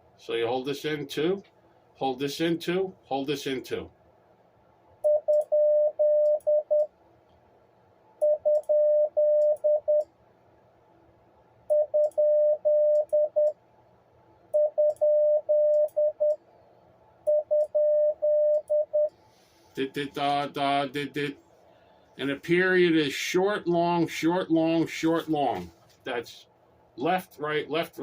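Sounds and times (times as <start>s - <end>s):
morse code beeps: 5.0s - 6.9s, 8.2s - 10.0s, 11.7s - 13.5s, 14.6s - 16.4s, 17.3s - 19.1s.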